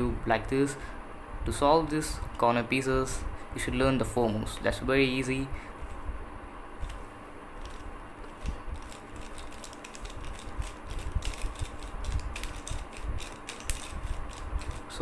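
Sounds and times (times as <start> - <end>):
puzzle cube plastic clicks: 7.6 - 14.8.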